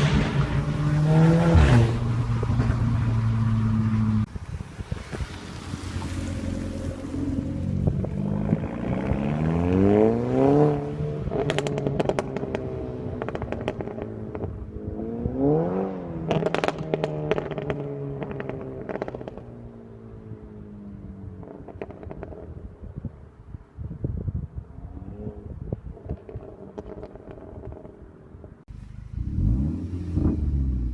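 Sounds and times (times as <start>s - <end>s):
car engine revving: 0.0s - 4.3s, 5.2s - 19.5s, 28.8s - 30.9s
exhaust pops and crackles: 11.2s - 14.7s, 16.3s - 19.6s, 21.4s - 22.6s, 25.7s - 29.1s.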